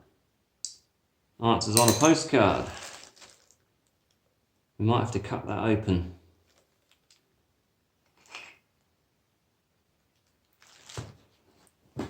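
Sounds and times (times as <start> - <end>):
rustling of metal parts: 1.7 - 3.6.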